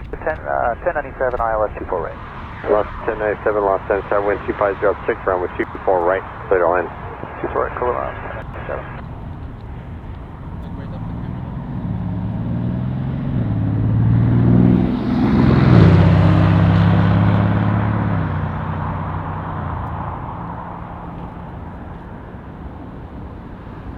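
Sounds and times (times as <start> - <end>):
vehicle engine passing by: 9.8 - 21.7.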